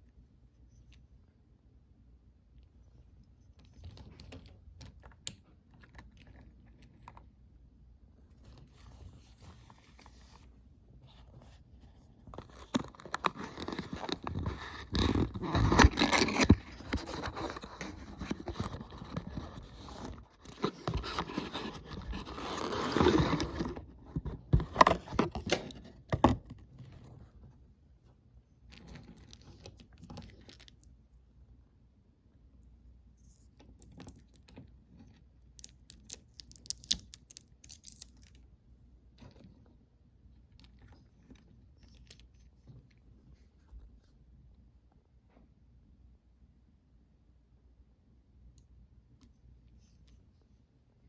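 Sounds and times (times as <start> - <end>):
packaging scraping and tearing: 12.4 - 23.9.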